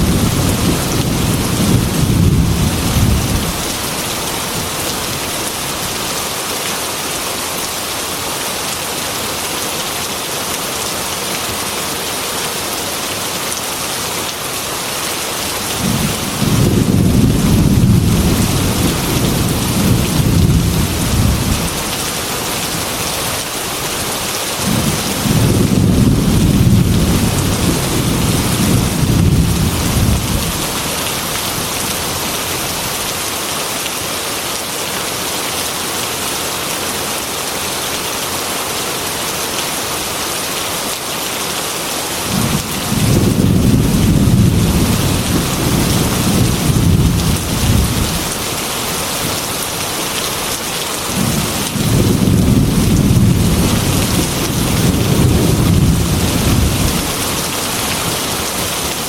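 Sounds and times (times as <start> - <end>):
thunder rumbling: 0.0 - 4.6, 15.7 - 22.0, 24.6 - 31.8, 42.3 - 48.4, 51.1 - 57.3
heavy rain on window: 0.0 - 37.4, 38.4 - 59.0.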